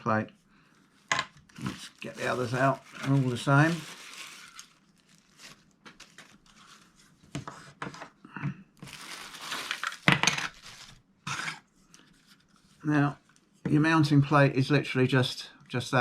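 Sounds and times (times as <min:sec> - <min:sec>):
packaging rustling and crinkling: 0:00.9 - 0:07.2, 0:08.8 - 0:11.0.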